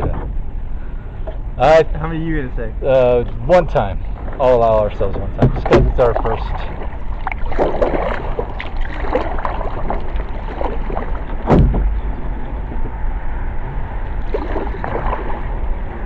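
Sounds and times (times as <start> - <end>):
rushing river water: 3.5 - 12.7, 13.8 - 16.0
sharp knock on canoe: 5.4 - 6.3, 11.4 - 12.0.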